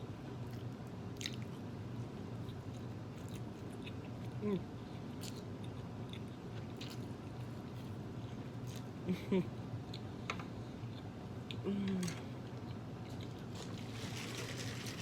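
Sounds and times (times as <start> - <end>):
person chewing food: 5.1 - 8.9.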